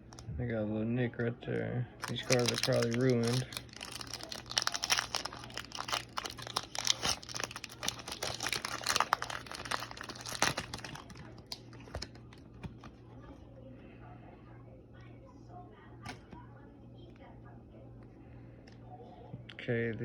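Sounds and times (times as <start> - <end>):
foil wrapper crinkling: 2.0 - 12.9.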